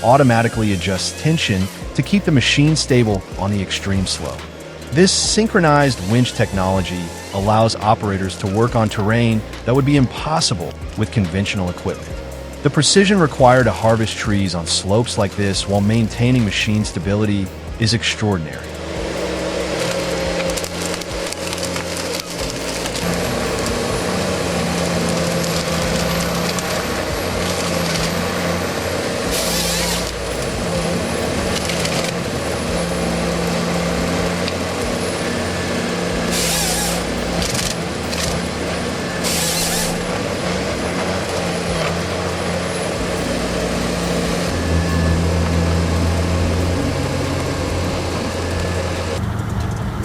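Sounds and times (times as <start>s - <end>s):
diesel engine running: 0.0s - 50.0s.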